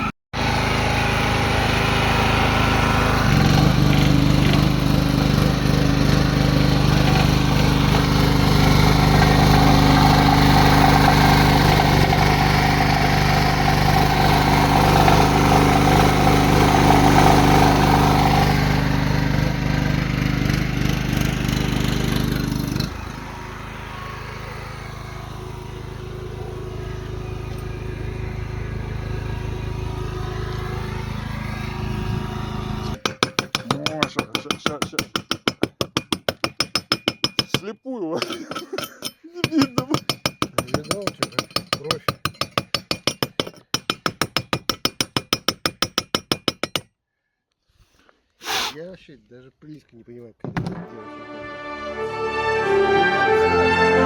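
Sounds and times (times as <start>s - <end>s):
generator engine running: 0.0s - 35.4s.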